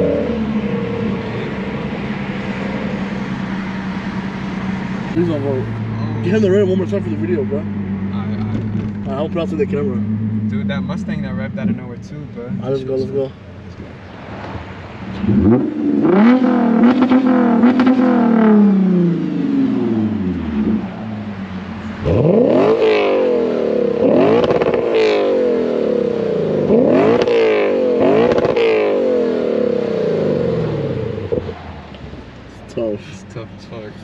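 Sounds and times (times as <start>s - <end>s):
car engine revving: 0.0s - 34.0s.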